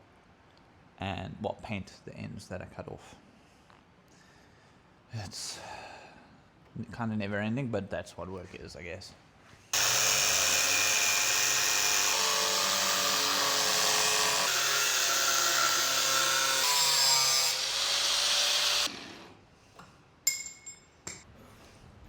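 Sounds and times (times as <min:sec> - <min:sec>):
angle grinder cutting steel: 0:09.8 - 0:19.4.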